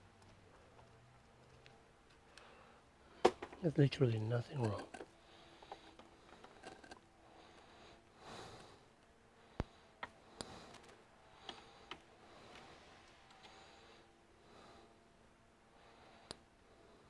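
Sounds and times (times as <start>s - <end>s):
soft breath of noise: 2.2s - 3.2s, 5.2s - 17.0s.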